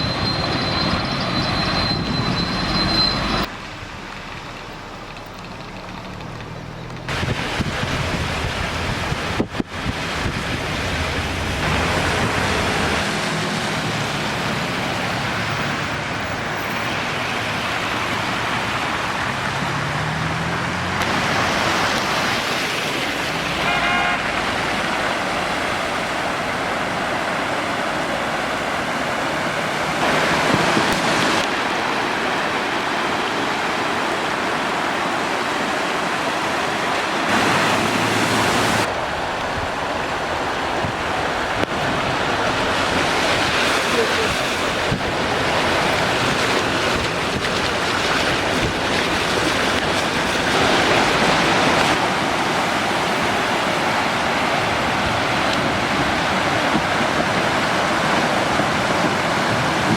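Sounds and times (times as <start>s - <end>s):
rainwater rushing: 0.0s - 59.9s
car horn toot: 23.5s - 24.6s.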